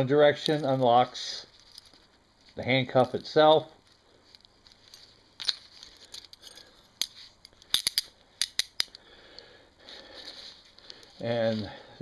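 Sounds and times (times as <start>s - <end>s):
handcuff lock clicking: 6.0s - 9.0s.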